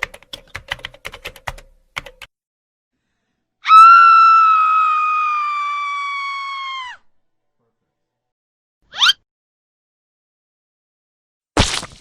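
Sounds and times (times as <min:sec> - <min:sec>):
keyboard typing: 0:00.0 - 0:02.3.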